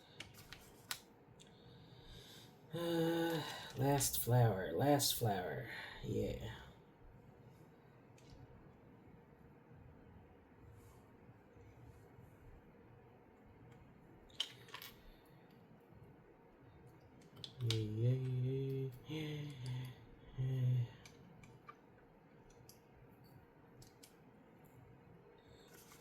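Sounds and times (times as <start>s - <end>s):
plastic bricks clicking: 17.2s - 17.8s.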